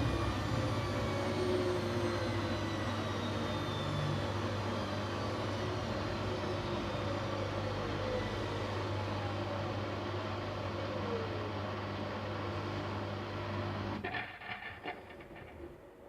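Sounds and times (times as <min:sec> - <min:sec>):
washing machine drum motor winding down: 0:00.0 - 0:09.2.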